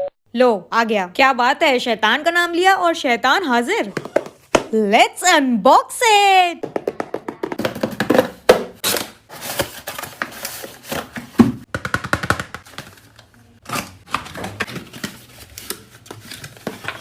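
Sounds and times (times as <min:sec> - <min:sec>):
packaging rustling and crinkling: 0:08.8 - 0:11.4, 0:12.6 - 0:17.0.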